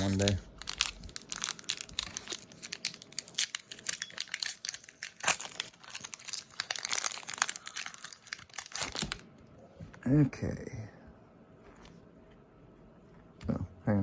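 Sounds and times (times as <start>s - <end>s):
foil wrapper crinkling: 0.0s - 9.2s.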